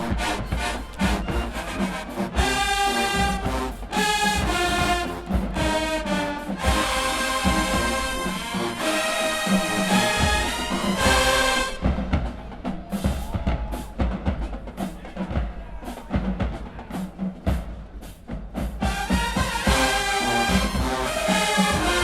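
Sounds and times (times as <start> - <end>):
brass section playing: 0.0 - 13.3, 18.8 - 22.0.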